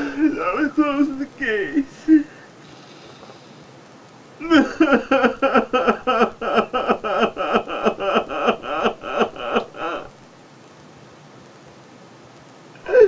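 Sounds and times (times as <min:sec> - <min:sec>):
man sobbing: 0:00.0 - 0:02.5, 0:04.4 - 0:10.2, 0:12.8 - 0:13.0.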